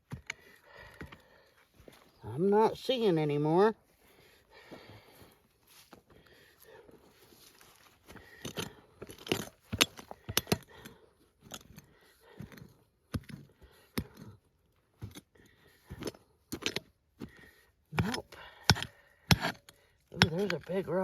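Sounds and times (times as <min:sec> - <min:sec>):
metal tool scraping rocky soil: 0:07.4 - 0:21.0.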